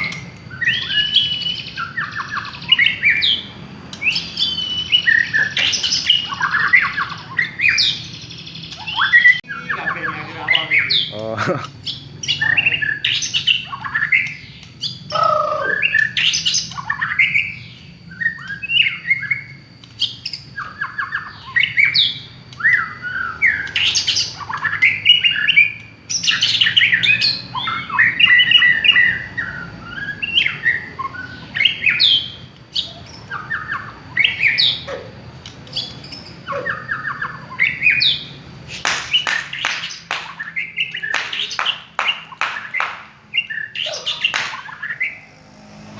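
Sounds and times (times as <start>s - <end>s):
songbird singing whistles and trills: 0.0s - 11.1s, 11.8s - 45.2s
bird rattling chatter: 38.8s - 40.4s.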